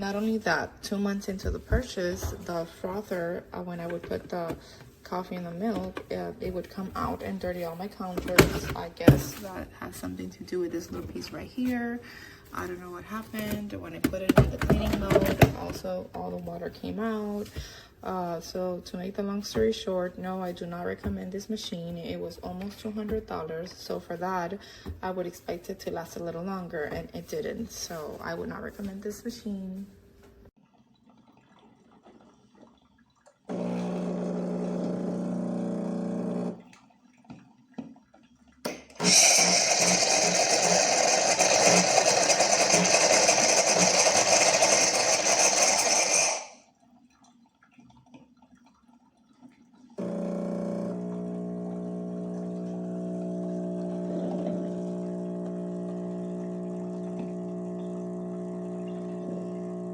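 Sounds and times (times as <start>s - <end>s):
espresso machine pump humming: 33.5s - 36.6s, 38.7s - 46.6s, 50.0s - 59.9s.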